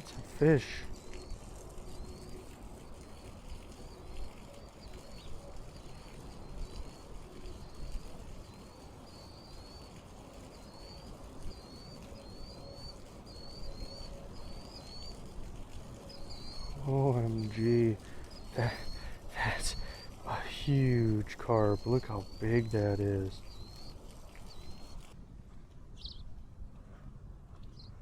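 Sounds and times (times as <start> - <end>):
bird chirping: 0.0 - 25.2, 26.0 - 26.3, 27.6 - 28.0.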